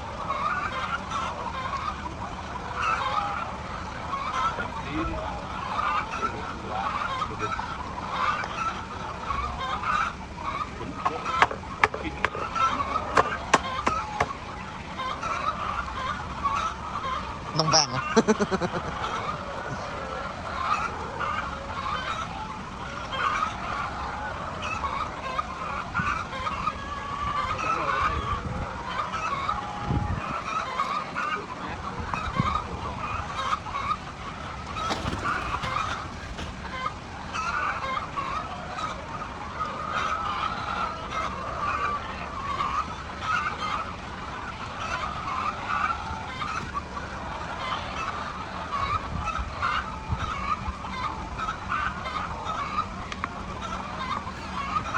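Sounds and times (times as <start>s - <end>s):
hens clucking: 0.0s - 54.9s
brief knocks: 11.1s - 12.4s, 13.2s - 14.4s.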